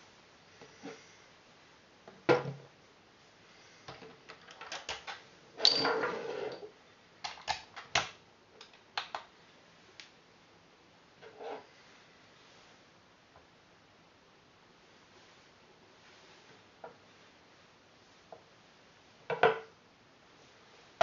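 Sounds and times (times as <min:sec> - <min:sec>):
metal sliding scrape: 0:05.6 - 0:06.6.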